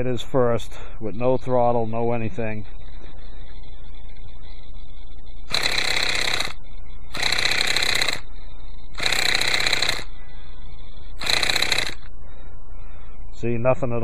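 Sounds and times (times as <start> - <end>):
electric starter spinning engine: 5.5 - 8.3, 8.9 - 10.1, 11.2 - 12.1.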